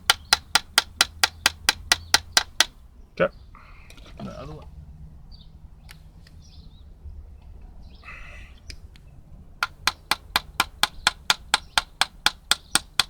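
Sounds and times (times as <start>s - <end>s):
sharp evenly spaced clicks: 0.0s - 2.8s, 9.6s - 13.0s.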